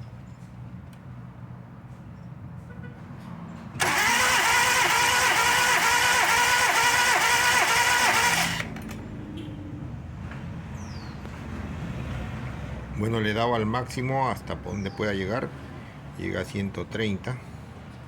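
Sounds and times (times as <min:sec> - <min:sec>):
starter cranking engine: 0:03.8 - 0:09.0.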